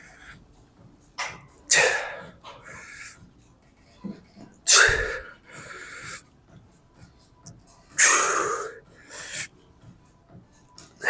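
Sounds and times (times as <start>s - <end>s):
man breathing forcefully: 4.7s - 6.2s, 8.0s - 9.5s.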